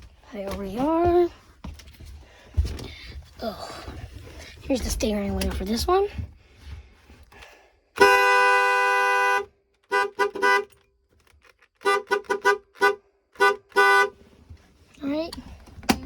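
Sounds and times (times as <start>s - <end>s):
vehicle horn blast and toots: 8.0s - 10.9s, 11.8s - 14.2s.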